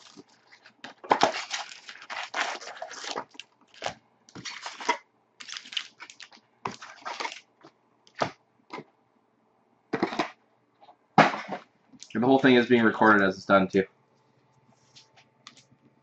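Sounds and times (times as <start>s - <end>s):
card pack wrappers tearing: 0.0s - 7.5s.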